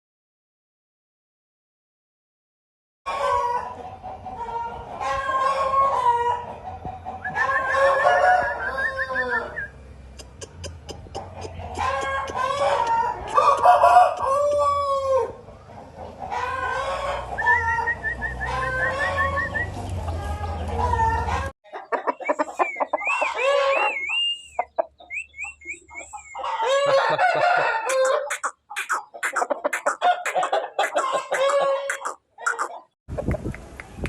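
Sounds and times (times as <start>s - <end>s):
chickens clucking: 3.1s - 34.0s
rooster crowing: 4.4s - 6.5s, 7.2s - 9.7s, 11.8s - 15.4s, 16.3s - 21.5s, 23.0s - 24.2s, 26.4s - 28.5s, 29.8s - 32.7s
high quick chirping: 27.8s - 32.8s.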